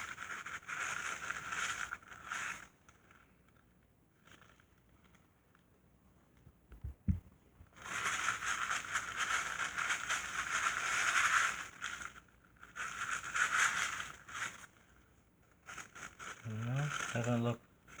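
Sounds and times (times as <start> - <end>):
light knocks: 6.7 - 7.4.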